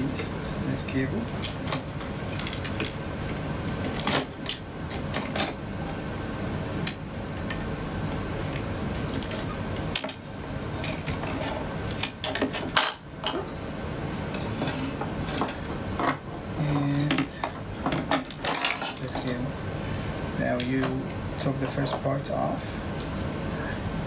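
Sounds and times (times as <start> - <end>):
cables unplugging and parts clattering: 1.4 - 5.6, 8.4 - 13.4, 14.3 - 20.0.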